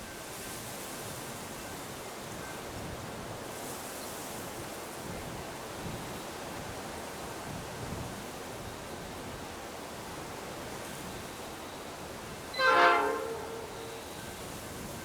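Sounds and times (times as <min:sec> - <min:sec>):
locomotive horn blast: 0:12.5 - 0:14.3.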